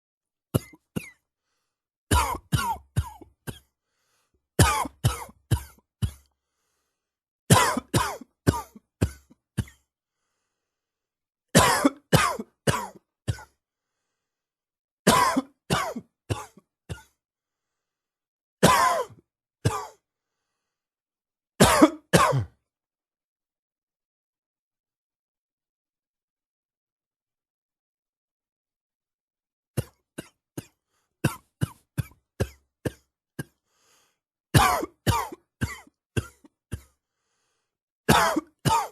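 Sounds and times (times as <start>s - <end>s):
man coughing: 2.1s - 3.7s, 4.6s - 6.3s, 7.5s - 9.8s, 11.6s - 13.6s, 15.1s - 17.2s, 18.6s - 20.0s, 21.6s - 22.6s, 29.8s - 33.6s, 34.6s - 37.0s, 38.1s - 38.9s.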